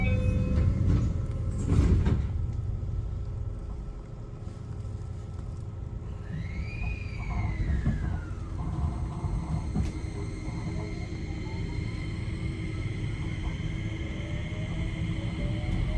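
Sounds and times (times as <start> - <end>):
train rumble: 0.0 - 15.9.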